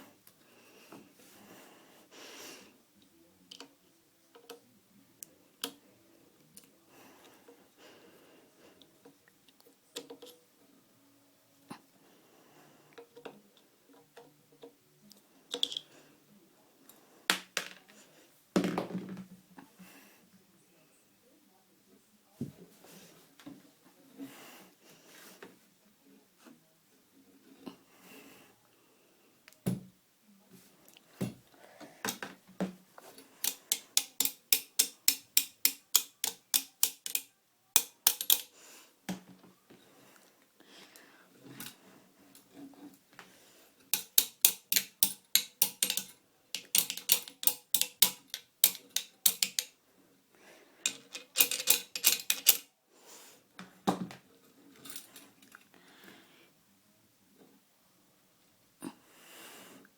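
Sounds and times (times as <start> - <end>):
rifle parts clicking and knocking: 33.2 - 38.5, 43.9 - 49.8, 50.8 - 52.7.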